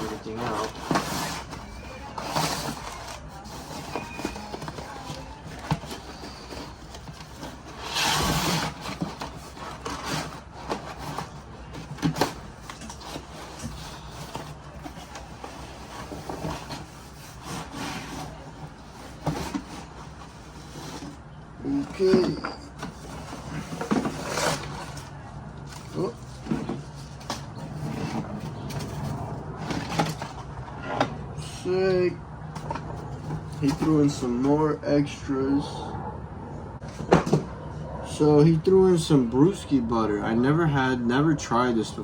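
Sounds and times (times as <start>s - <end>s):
packaging rustling: 0.0s - 30.5s.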